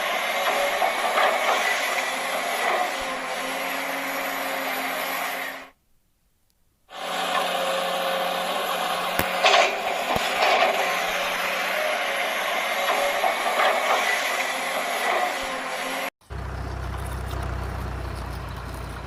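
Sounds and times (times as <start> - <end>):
small electric motors whirring: 0.0 - 5.8, 6.9 - 16.1.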